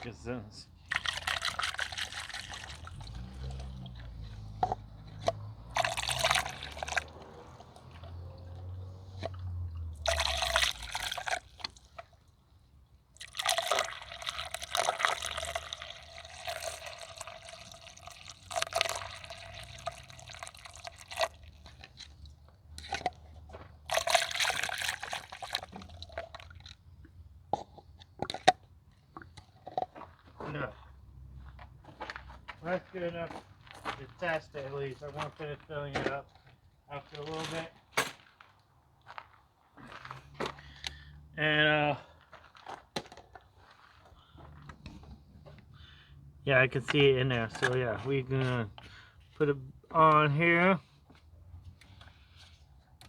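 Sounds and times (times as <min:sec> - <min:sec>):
water pouring through a funnel: 0:00.8 - 0:08.5, 0:09.1 - 0:12.3, 0:13.2 - 0:23.2, 0:23.8 - 0:26.8.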